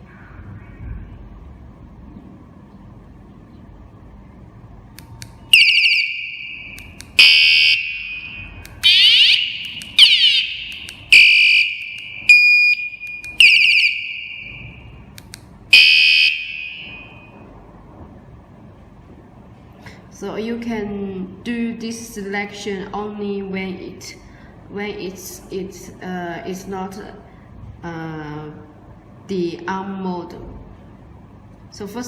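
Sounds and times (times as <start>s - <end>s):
vehicle alarm siren tones: 5.5s - 15.0s, 15.7s - 17.4s.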